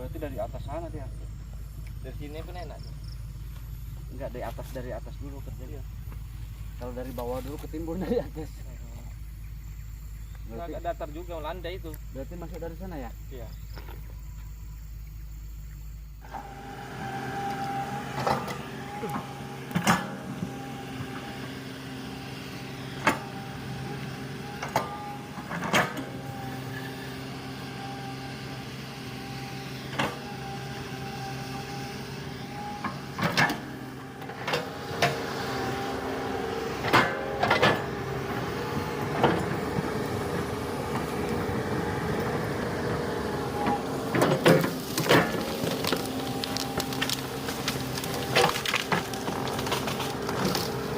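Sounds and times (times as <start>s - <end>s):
excavator diesel engine running: 0.0s - 50.9s
sharp knocks and cracks: 44.2s - 50.8s.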